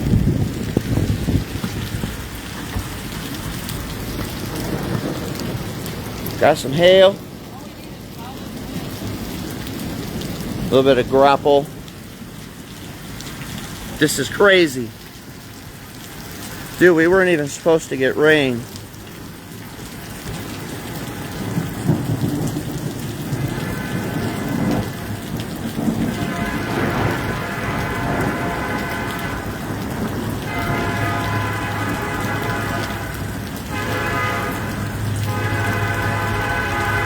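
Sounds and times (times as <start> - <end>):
low rumble of thunder: 0.0 - 13.9, 18.6 - 37.0
steady rain falling: 0.0 - 37.0
train horn blasts: 23.4 - 25.3, 26.0 - 29.8, 30.4 - 37.0.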